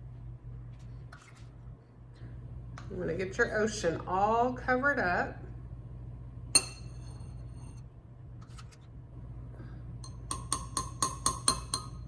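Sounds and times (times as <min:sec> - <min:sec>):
spoon tapping glass: 0:06.6 - 0:07.3, 0:10.0 - 0:12.0.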